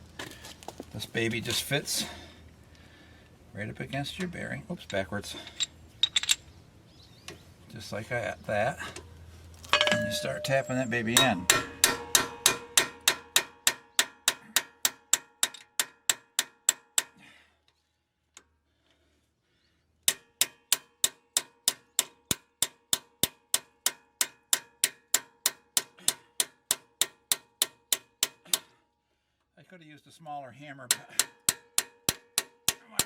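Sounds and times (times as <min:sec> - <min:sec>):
hammer tapping metal: 0:09.7 - 0:17.1, 0:30.9 - 0:33.0.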